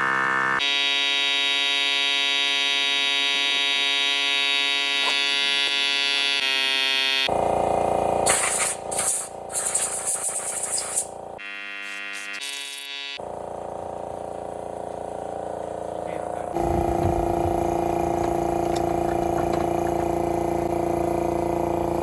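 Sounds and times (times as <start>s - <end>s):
hissy choppy noise: 8.3s - 11.1s.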